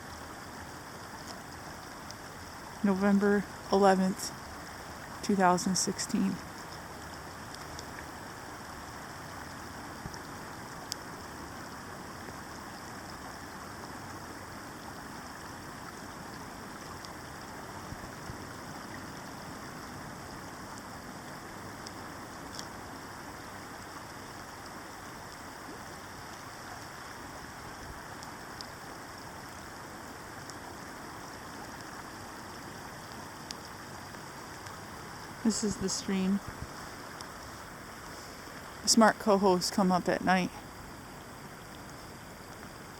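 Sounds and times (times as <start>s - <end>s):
stream rushing: 0.0s - 42.9s
faint ticks: 0.9s - 2.8s, 5.8s - 8.1s, 8.7s - 13.4s, 16.3s - 21.0s, 21.6s - 23.1s, 23.8s - 35.4s, 36.4s - 38.8s, 40.4s - 42.9s.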